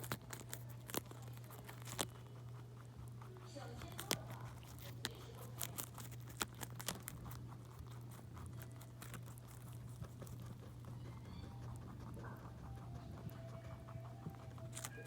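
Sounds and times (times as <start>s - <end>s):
crisp munching crunches: 0.0s - 11.0s, 14.4s - 15.0s
soft chewing: 0.0s - 15.0s.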